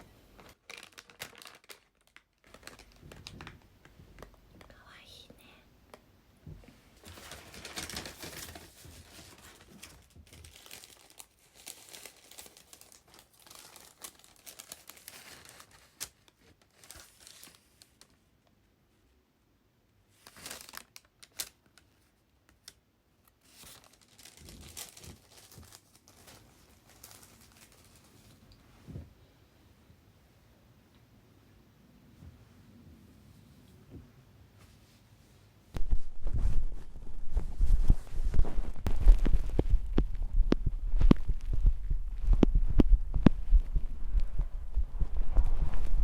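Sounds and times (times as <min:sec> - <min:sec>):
packaging crinkling and rustling: 0:00.3 - 0:04.7, 0:07.0 - 0:18.2, 0:20.1 - 0:28.6, 0:35.8 - 0:46.0.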